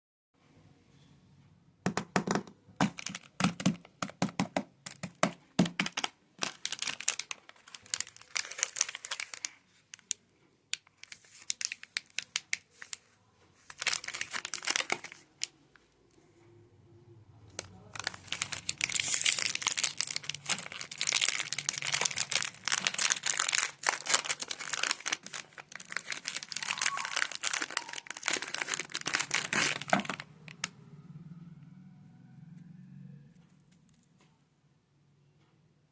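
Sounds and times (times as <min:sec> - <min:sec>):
wrappers crinkling and tearing: 0:02.8 - 0:04.2, 0:04.9 - 0:10.2, 0:10.8 - 0:15.5, 0:17.6 - 0:30.7.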